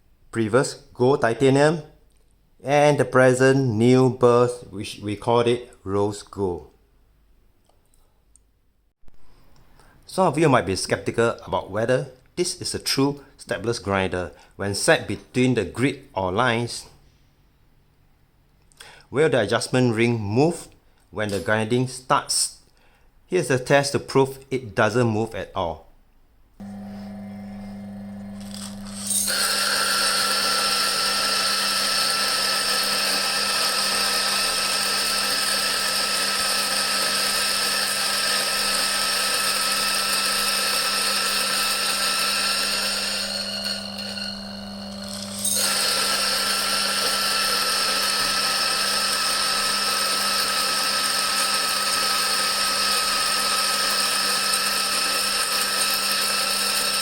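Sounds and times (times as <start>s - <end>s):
coffee beans being ground: 26.6s - 57.0s
grinder motor hum: 26.6s - 57.0s.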